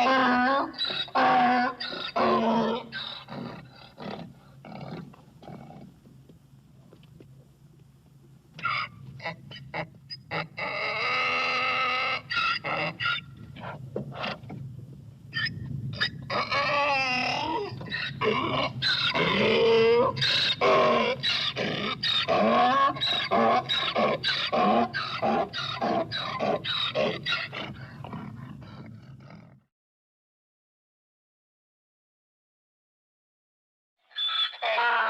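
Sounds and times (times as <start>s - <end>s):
donkey braying: 0.0s - 5.9s, 8.6s - 14.6s, 15.4s - 29.5s, 34.1s - 35.0s.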